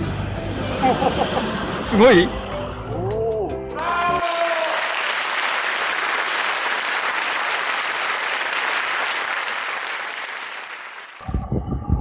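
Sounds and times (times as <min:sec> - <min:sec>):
applause: 0:03.8 - 0:11.3.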